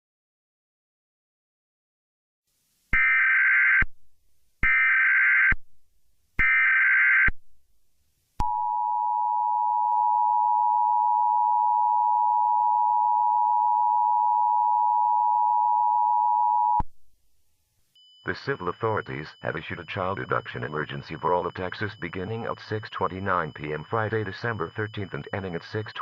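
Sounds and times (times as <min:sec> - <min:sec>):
digital data tone bursts: 0:18.2 - 0:26.0.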